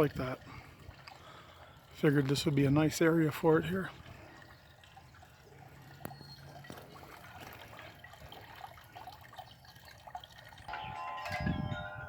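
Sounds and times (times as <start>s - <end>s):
small birds chirping: 3.2s - 7.7s.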